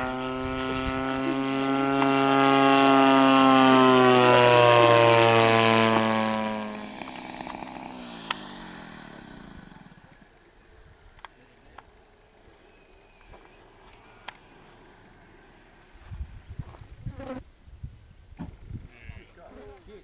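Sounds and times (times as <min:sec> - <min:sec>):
model plane engine flying past: 0:00.0 - 0:10.6, 0:11.2 - 0:16.4.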